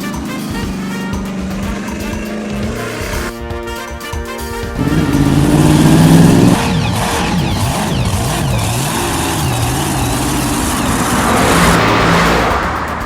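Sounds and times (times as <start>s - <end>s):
vehicle engine revving: 0.0s - 3.3s, 4.6s - 13.0s.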